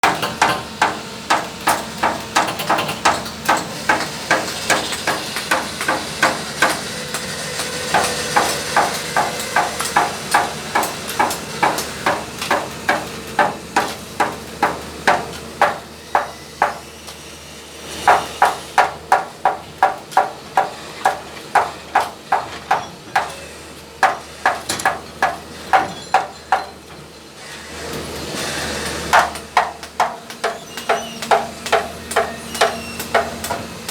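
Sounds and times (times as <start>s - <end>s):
hammer blows: 28.4s - 33.9s.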